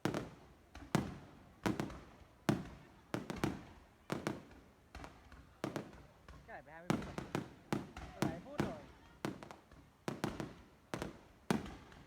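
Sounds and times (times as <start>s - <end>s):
fireworks bursting with echo: 0.0s - 12.0s.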